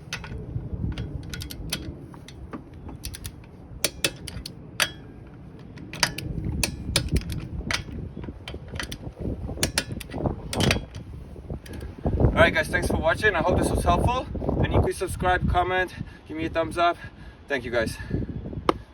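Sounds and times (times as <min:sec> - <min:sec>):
torque wrench ratchet clicking: 0:03.0 - 0:05.0.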